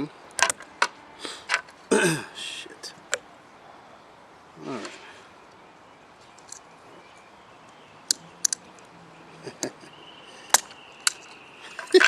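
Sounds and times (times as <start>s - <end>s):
small parts clicking against metal: 8.1s - 8.9s, 10.5s - 12.0s.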